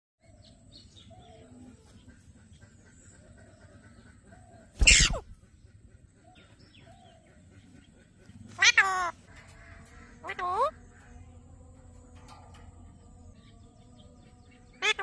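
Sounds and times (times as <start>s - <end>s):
loud harsh bird call: 4.8s - 5.4s.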